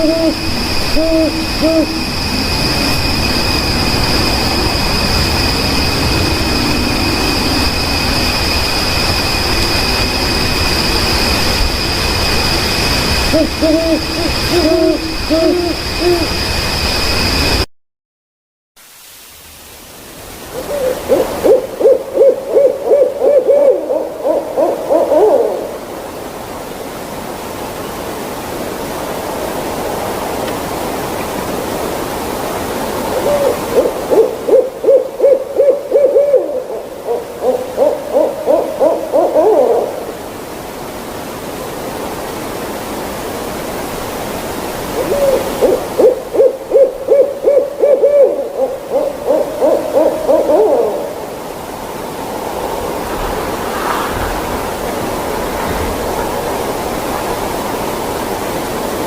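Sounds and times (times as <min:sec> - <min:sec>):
owl hooting: 0:00.0 - 0:17.0, 0:20.4 - 0:26.2, 0:33.0 - 0:40.3, 0:44.8 - 0:53.5
steady rushing noise: 0:00.0 - 0:17.6, 0:18.8 - 0:59.0.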